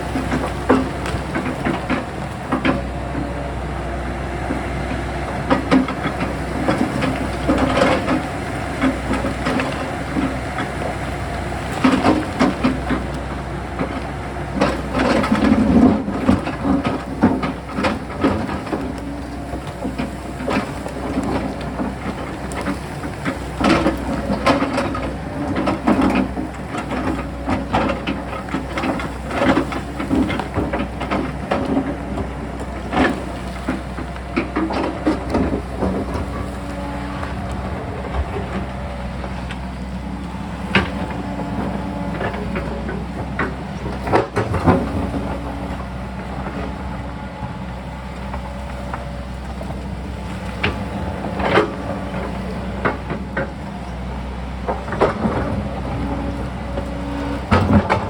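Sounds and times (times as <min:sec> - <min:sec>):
diesel excavator engine: 0:00.0 - 0:58.0
bucket scraping and clanking on rock: 0:13.8 - 0:47.1, 0:54.7 - 0:58.0.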